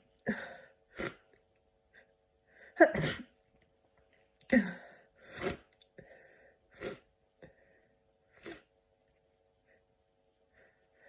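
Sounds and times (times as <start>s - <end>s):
person sneezing: 2.8s - 3.3s, 4.6s - 5.7s.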